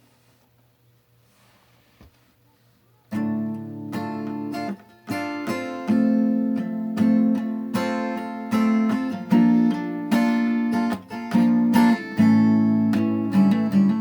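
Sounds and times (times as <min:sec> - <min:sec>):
acoustic guitar chords: 0:03.1 - 0:14.0.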